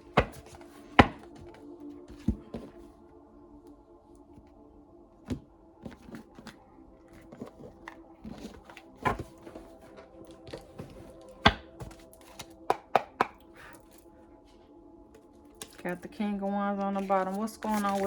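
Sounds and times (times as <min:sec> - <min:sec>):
soft background music: 0:00.0 - 0:18.0
cards tapping and snapping: 0:11.5 - 0:13.4.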